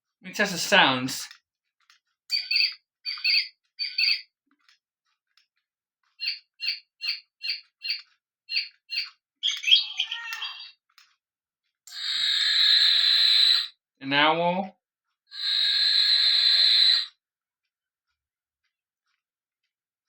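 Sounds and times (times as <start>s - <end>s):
bird calls from clock speaker: 2.3s - 4.2s, 6.2s - 10.7s.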